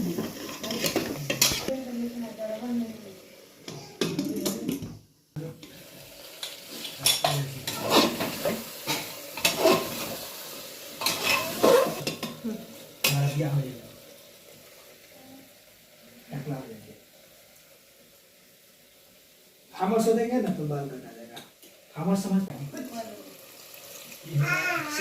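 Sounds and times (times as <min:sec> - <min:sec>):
curry sizzling in oil: 0:00.0 - 0:04.6, 0:05.4 - 0:25.0
metal spoon scraping a pot: 0:09.4 - 0:10.1, 0:11.0 - 0:12.2.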